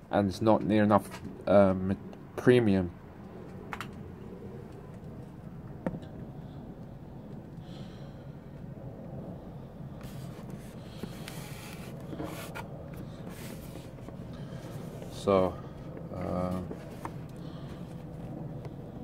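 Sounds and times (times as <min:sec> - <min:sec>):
low room hum: 0:00.0 - 0:19.0
shoe rubbing and handling: 0:10.0 - 0:15.2, 0:16.4 - 0:18.0.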